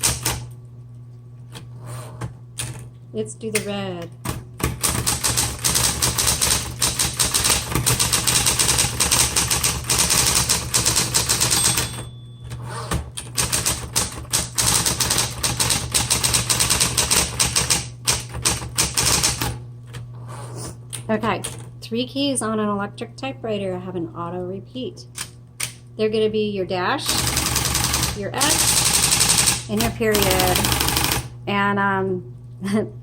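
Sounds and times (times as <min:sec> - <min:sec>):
electric typewriter keystrokes: 0:00.0 - 0:00.6, 0:03.5 - 0:20.0, 0:27.0 - 0:31.3
typewriter motor humming: 0:00.0 - 0:00.6, 0:03.5 - 0:20.0, 0:27.0 - 0:31.3.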